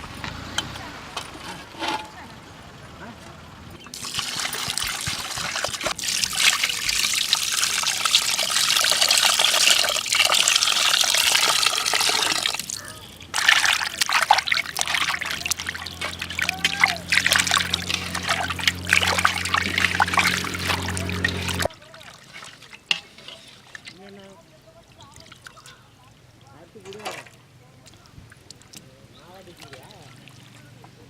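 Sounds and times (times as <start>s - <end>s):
water pouring and splashing: 3.9s - 24.2s.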